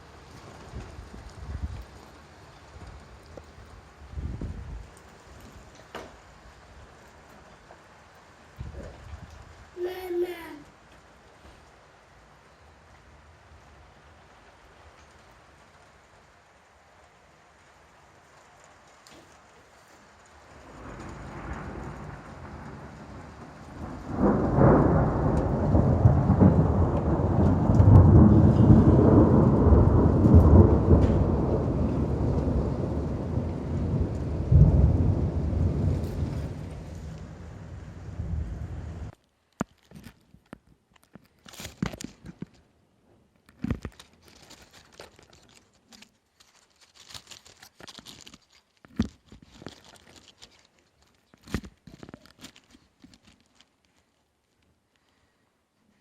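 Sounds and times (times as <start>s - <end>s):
thunder rumbling: 0.0s - 7.1s, 20.1s - 39.2s
rain falling: 0.0s - 56.0s.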